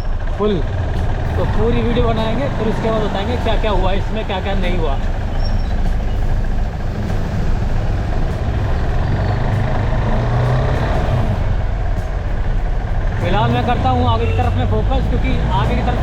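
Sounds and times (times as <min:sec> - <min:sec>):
motorcycle engine running: 0:00.0 - 0:16.0
road and wind noise: 0:00.0 - 0:16.0.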